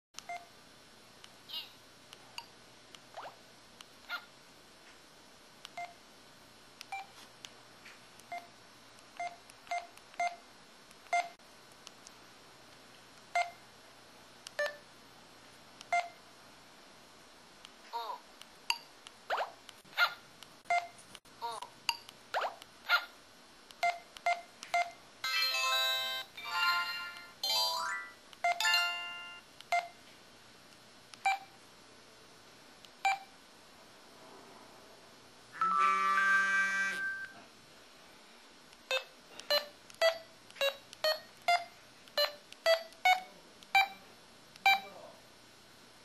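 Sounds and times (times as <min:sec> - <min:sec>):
short phone beeps: 0:35.6 - 0:37.4.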